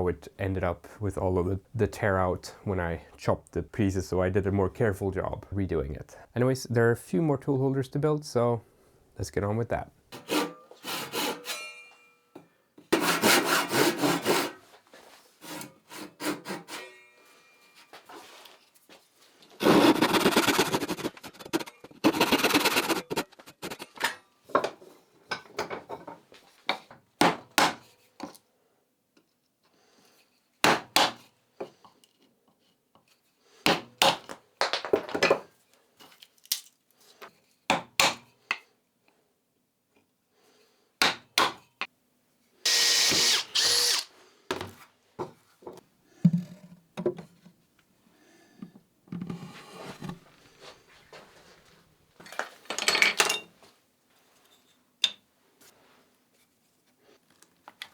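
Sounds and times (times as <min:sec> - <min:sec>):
handsaw cutting wood: 0:10.2 - 0:11.5, 0:12.9 - 0:14.6, 0:15.4 - 0:16.8, 0:19.6 - 0:23.3, 0:42.7 - 0:44.1.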